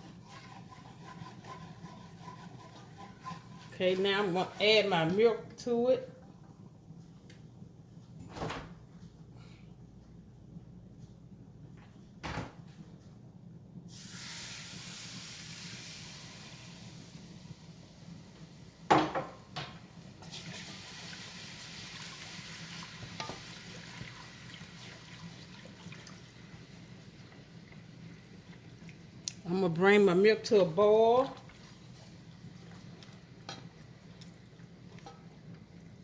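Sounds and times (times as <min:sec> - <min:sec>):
milk hissing in hot pan: 0:13.9 - 0:18.4, 0:20.1 - 0:29.2
knock against pan: 0:18.9 - 0:19.8.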